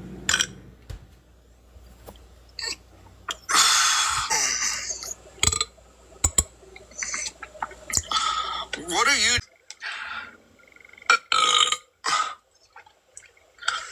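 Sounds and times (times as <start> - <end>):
person burping: 2.6 - 5.7, 11.1 - 12.4.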